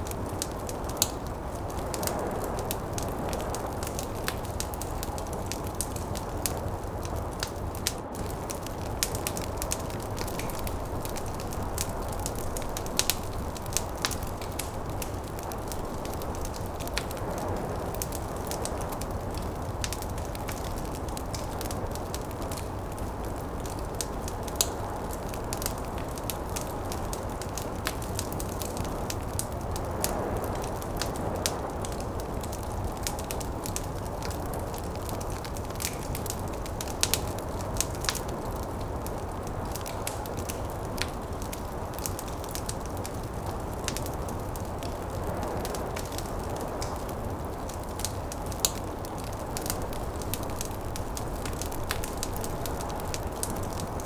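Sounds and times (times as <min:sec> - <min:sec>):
snowstorm wind: 0:00.0 - 0:54.0
wood fire crackling: 0:00.0 - 0:54.0.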